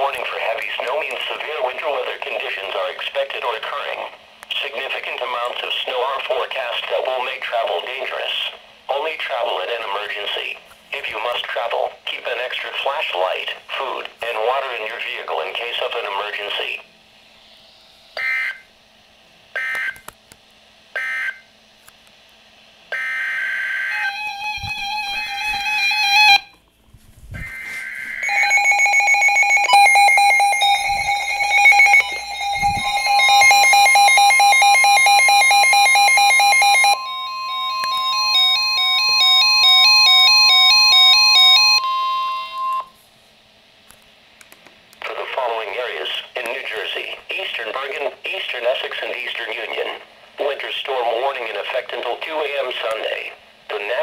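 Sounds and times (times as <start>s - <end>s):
steady high alert tone: 22.9s - 26.5s, 27.4s - 42.9s
electronic beeping and warbling tones: 27.4s - 37.0s
data tone bursts: 27.4s - 39.5s.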